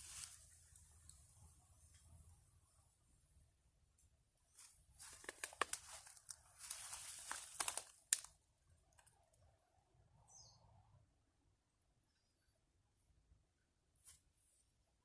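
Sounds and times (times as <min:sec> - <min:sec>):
wood fire crackling: 0:05.0 - 0:08.3.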